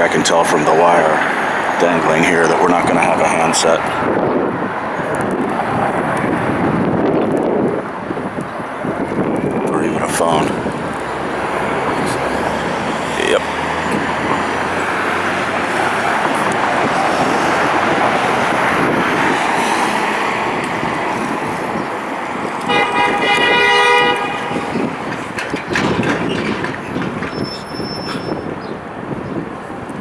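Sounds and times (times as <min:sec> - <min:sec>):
city street traffic: 0:00.0 - 0:30.0
vehicle horn honking: 0:22.6 - 0:25.3.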